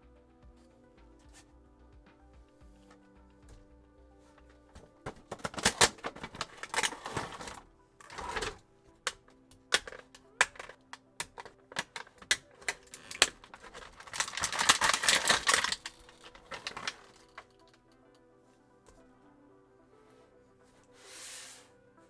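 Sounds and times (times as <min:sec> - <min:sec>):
plastic and cardboard clicking: 0:04.6 - 0:17.8
packaging crinkling: 0:04.9 - 0:17.6.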